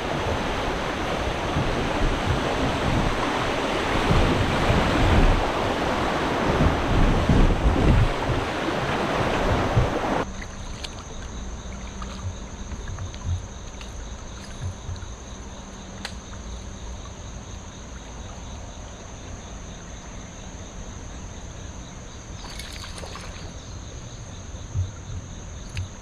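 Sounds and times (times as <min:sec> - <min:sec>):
low thumps: 0:00.0 - 0:10.2, 0:11.9 - 0:15.3, 0:24.7 - 0:26.0
splashy rustle: 0:00.0 - 0:17.2, 0:22.4 - 0:23.7.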